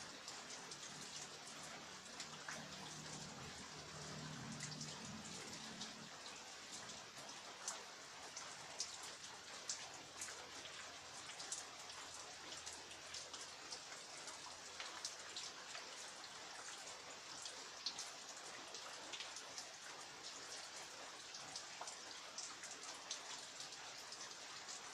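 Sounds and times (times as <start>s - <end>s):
sharp water drips: 0.0s - 24.9s
steady rain hiss: 0.0s - 24.9s.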